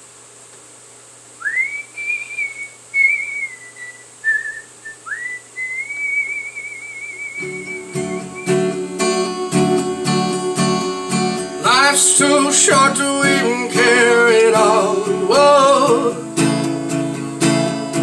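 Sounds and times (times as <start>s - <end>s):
person whistling a melody: 1.4s - 8.8s
acoustic guitar strumming: 7.2s - 18.0s.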